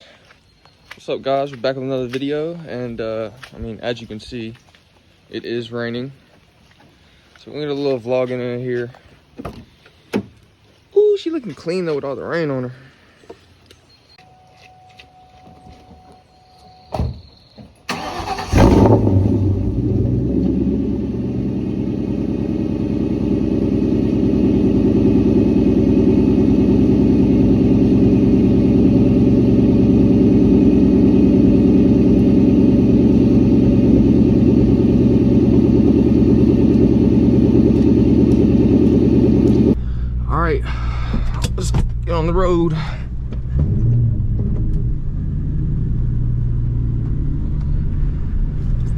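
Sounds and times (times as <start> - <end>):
car engine cranking and idling: 17.9 - 48.9.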